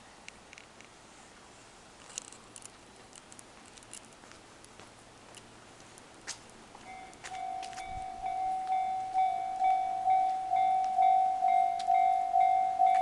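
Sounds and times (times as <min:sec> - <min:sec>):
faint background hiss: 0:00.0 - 0:13.0
level-crossing bell ringing: 0:06.9 - 0:13.0.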